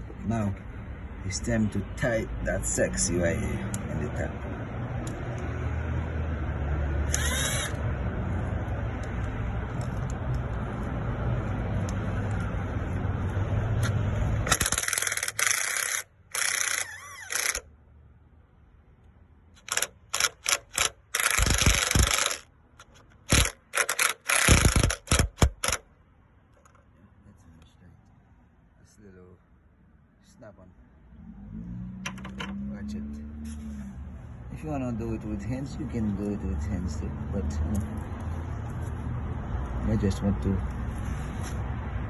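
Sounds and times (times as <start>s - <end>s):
cordless ratchet tightening bolts: 7.1s - 7.8s, 14.4s - 17.7s, 19.6s - 25.9s.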